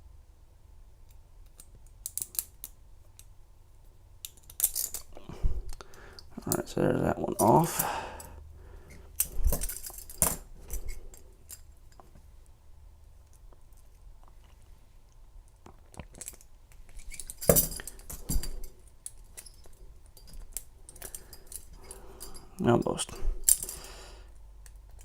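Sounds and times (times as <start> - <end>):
metal clicks of handcuffs: 1.0 - 3.4, 4.2 - 6.7, 7.3 - 12.2, 15.5 - 25.0.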